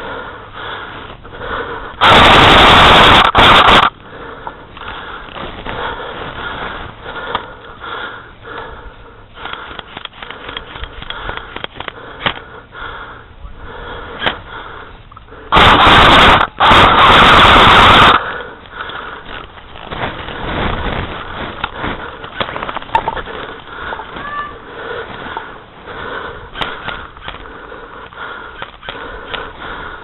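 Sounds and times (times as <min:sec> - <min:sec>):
scattered clicks: 0:01.9 - 0:05.8, 0:09.4 - 0:12.5, 0:15.1 - 0:25.6, 0:26.4 - 0:30.0
distorted bursts of harsh noise: 0:02.0 - 0:04.0, 0:15.5 - 0:18.4.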